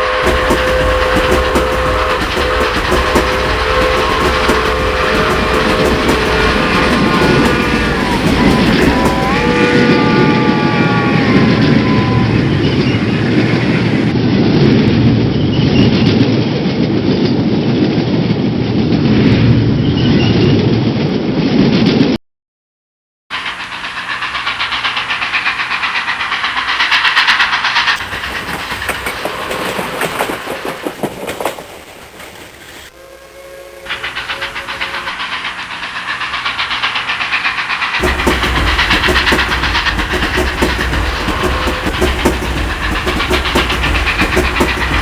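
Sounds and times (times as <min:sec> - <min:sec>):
train wheels clicking over rail joints: 0:00.0 - 0:09.8, 0:23.3 - 0:33.0, 0:33.8 - 0:45.0
deep heavy rumble: 0:00.0 - 0:14.6, 0:38.0 - 0:45.0.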